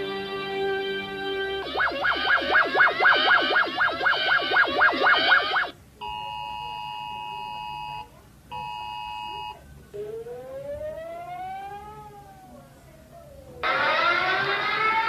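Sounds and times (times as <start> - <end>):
siren winding up: 1.6 - 5.8, 13.6 - 15.0
warbling electronic alarm: 1.6 - 5.8, 13.6 - 15.0.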